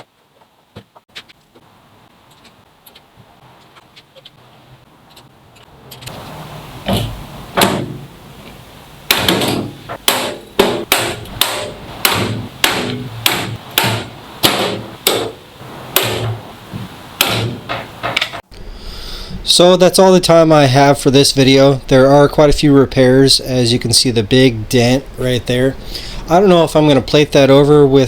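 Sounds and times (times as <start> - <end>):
hammer striking sheet metal: 6.9 - 8.1, 9.1 - 16.5, 17.2 - 18.4.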